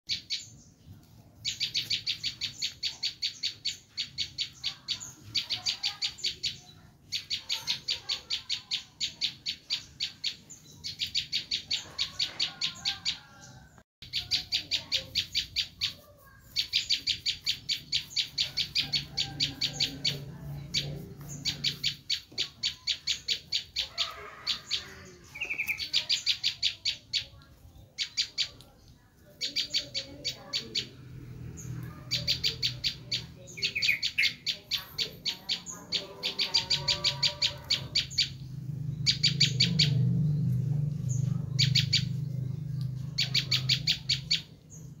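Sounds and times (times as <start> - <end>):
bird alarm call chipping: 14.0 - 28.6, 29.3 - 44.9.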